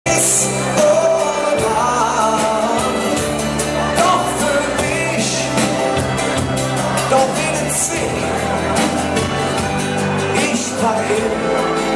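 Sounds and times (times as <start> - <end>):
rock band playing live: 0.0 - 11.9
lead singer singing: 0.1 - 11.9.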